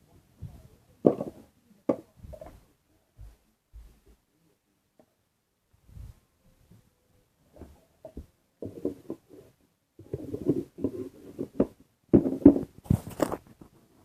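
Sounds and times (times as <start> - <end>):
packaging rustling and knocking: 10.2 - 13.7.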